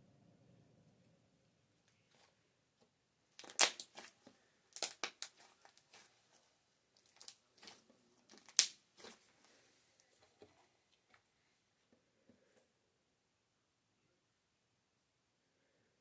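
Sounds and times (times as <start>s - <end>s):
slime popping and crackling: 3.3s - 6.2s, 7.0s - 9.2s.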